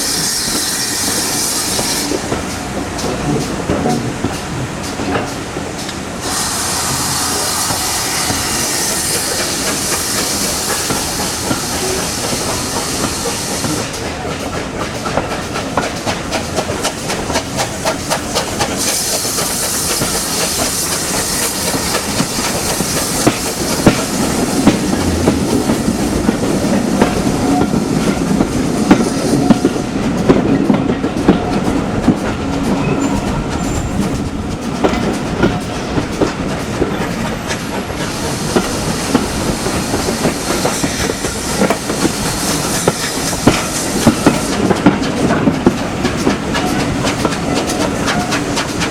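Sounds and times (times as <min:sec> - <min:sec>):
high hiss: 0:00.0 - 0:02.3, 0:05.8 - 0:14.1, 0:15.5 - 0:30.7, 0:35.1 - 0:45.8
train wheels clacking over rails: 0:00.0 - 0:48.9.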